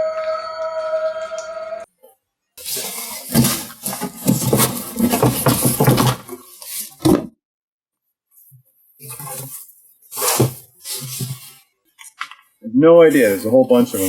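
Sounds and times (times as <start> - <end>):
cardboard and foam rustling: 2.6 - 7.3, 8.4 - 12.2, 13.0 - 14.0.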